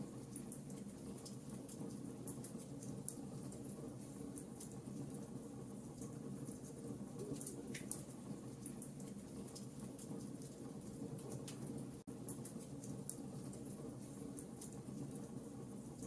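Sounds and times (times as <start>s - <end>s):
wood fire burning: 0.1s - 16.0s
fire crackles and pops: 6.0s - 14.8s.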